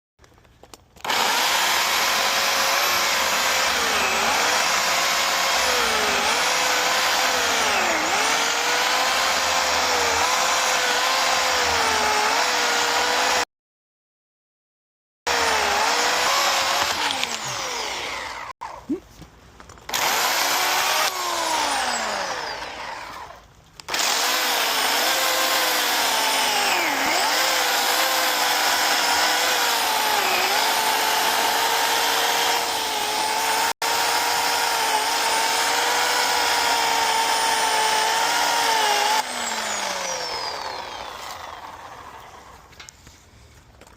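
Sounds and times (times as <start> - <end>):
electric chainsaw cutting wood: 1.0 - 13.5, 15.3 - 18.8, 19.9 - 42.9.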